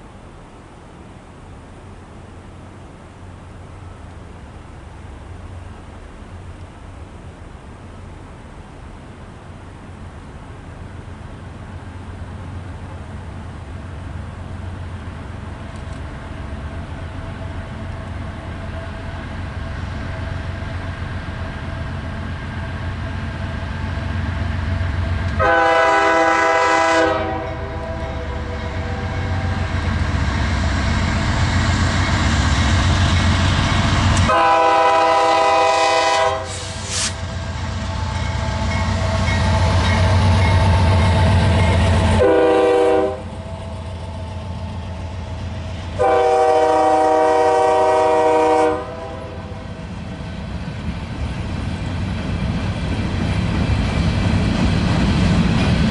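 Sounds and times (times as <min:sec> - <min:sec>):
locomotive engine rumbling: 0:00.0 - 0:55.9
locomotive air horn blasts: 0:25.4 - 0:29.6, 0:34.2 - 0:37.4, 0:42.1 - 0:43.4, 0:46.0 - 0:49.6.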